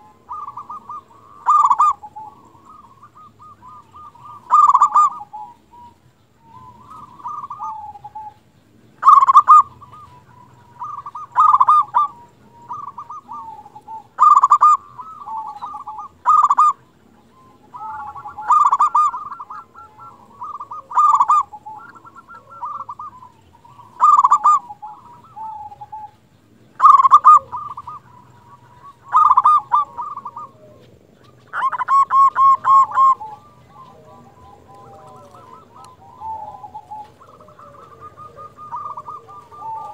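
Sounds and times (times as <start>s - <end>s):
dove cooing: 0.0s - 39.9s.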